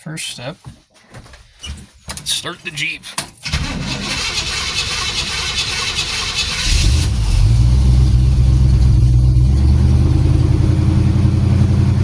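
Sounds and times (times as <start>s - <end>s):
engine cranking on starter: 3.4s - 10.6s
engine running steadily: 4.4s - 12.0s.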